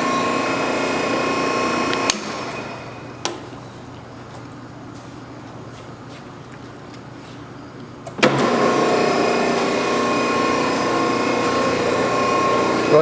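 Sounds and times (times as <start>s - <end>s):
hydraulic pump whining: 0.0s - 3.5s, 8.0s - 13.0s.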